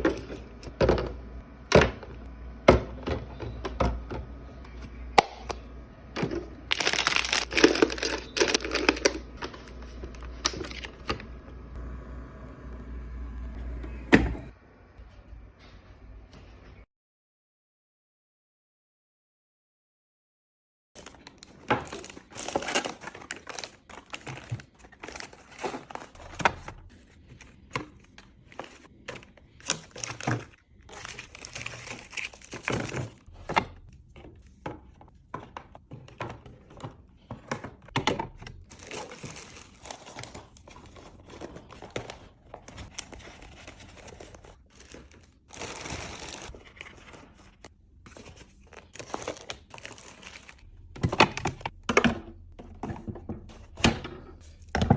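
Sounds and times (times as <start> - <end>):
plastic packaging crinkling and tearing: 6.6 - 11.3, 21.0 - 33.4, 38.6 - 51.7.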